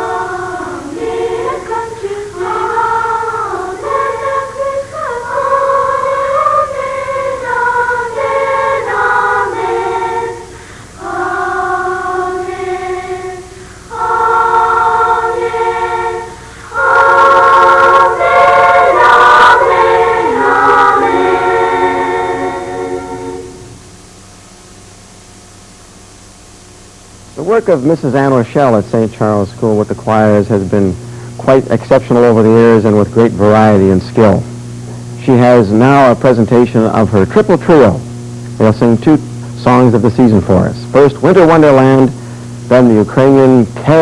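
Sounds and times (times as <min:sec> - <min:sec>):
children's choir singing: 0:00.0 - 0:23.7.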